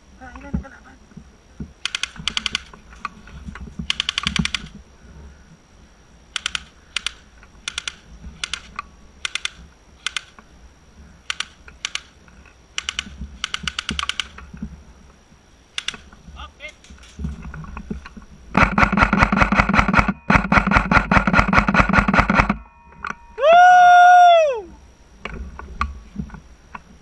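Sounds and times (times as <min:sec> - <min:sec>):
airsoft guns firing: 0:01.8 - 0:02.8, 0:03.9 - 0:04.8, 0:06.4 - 0:10.4, 0:12.8 - 0:14.4, 0:15.8 - 0:17.2, 0:18.6 - 0:22.6.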